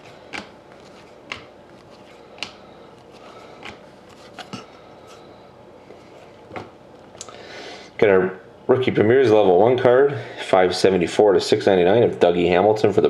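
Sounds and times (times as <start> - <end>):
trading cards clicking and snapping: 0.0 - 4.7
faint room hum: 0.0 - 13.0.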